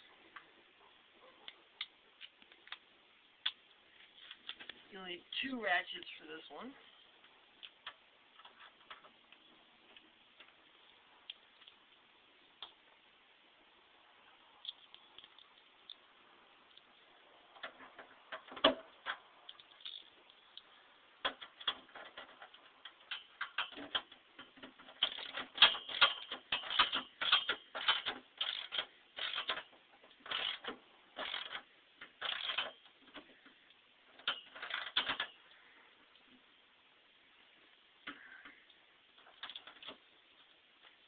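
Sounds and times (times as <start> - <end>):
socket ratchets clicking: 30.3 - 31.6.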